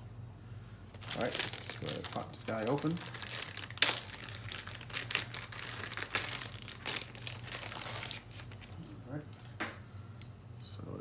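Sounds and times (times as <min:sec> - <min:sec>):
packaging crinkling by hand: 0:00.9 - 0:08.8.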